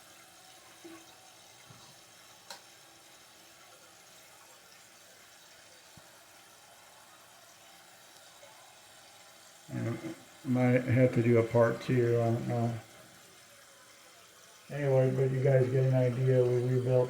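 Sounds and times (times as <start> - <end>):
toilet tank refilling hiss: 0.0 - 17.0.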